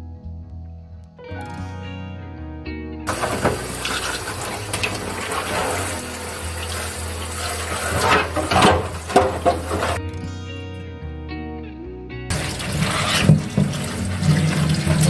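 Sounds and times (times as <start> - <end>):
tap water running into sink: 3.1 - 10.0, 12.3 - 15.0
things clattering in sink: 3.1 - 10.0, 12.3 - 15.0.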